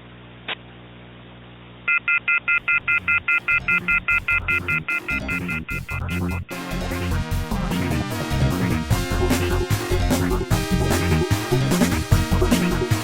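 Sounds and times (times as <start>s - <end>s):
telephone off-hook warning tone: 1.9s - 6.5s
music: 3.0s - 13.0s.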